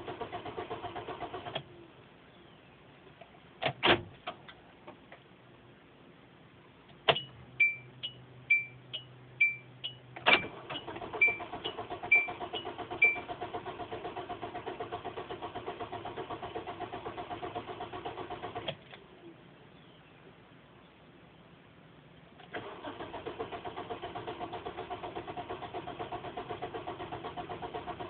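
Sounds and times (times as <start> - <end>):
car starter cranking engine: 0.0 - 1.7, 10.2 - 18.9, 22.4 - 28.0
dashboard warning chime: 7.1 - 10.1.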